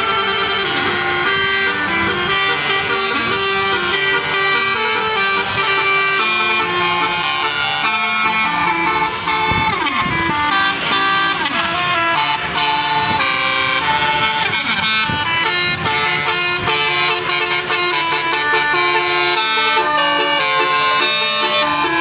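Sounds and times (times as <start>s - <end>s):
musical air horn playing tune: 0.0s - 22.0s.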